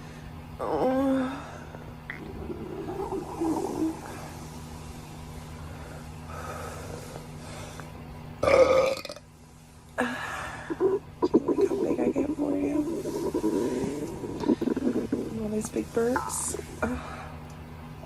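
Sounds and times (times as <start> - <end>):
steady low hum: 0.0 - 18.0
person burping: 2.1 - 3.1, 8.4 - 9.2, 13.2 - 15.4
soft stomach rumbles: 10.7 - 16.8.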